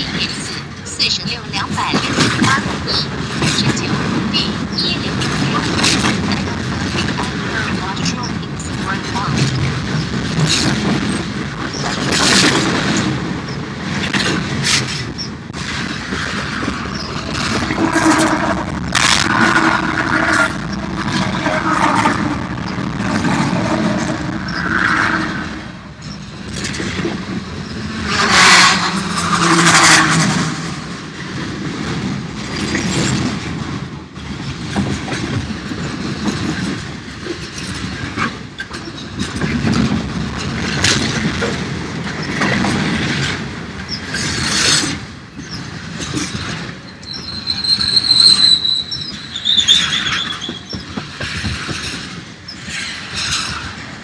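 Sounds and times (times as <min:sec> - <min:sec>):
train wheels on rails: 0:00.0 - 0:54.0
high wheel squeal: 0:46.8 - 0:51.0.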